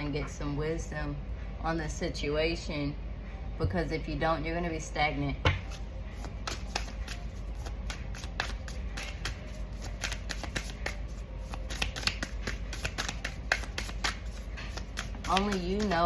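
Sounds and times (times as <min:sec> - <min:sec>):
steady low hum: 0:00.0 - 0:10.0
cards being shuffled: 0:05.5 - 0:16.0.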